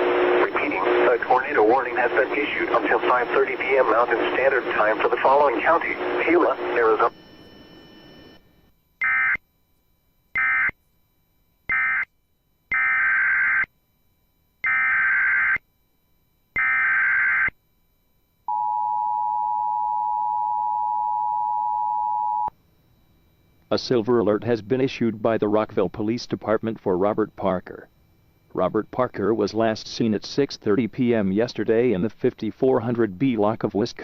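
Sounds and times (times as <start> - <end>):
digital data bursts: 0.4 - 7.1
two-tone attention signal: 18.5 - 22.5.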